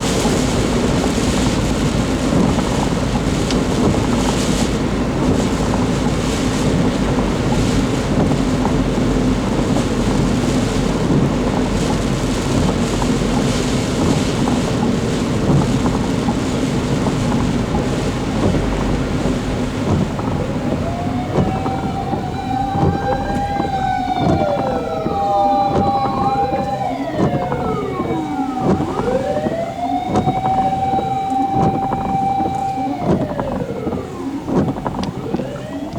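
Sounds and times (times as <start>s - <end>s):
road traffic: 0.0s - 35.9s
emergency sirens wailing: 16.1s - 35.9s
wind rushing: 17.6s - 33.7s.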